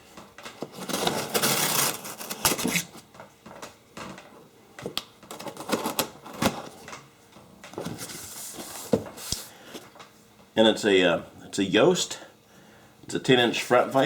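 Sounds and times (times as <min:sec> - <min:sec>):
packaging rustling and scraping: 0:00.4 - 0:03.1, 0:05.3 - 0:07.0, 0:07.7 - 0:09.9.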